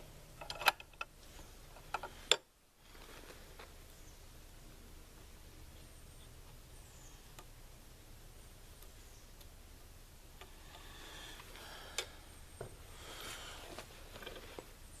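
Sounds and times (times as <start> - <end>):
metal rifle parts clicking: 0.4 - 1.1.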